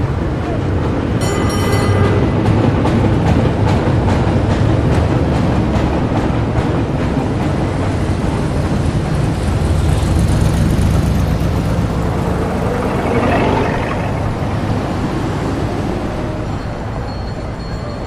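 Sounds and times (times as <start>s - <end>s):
low rumble of motor traffic: 7.6s - 16.6s.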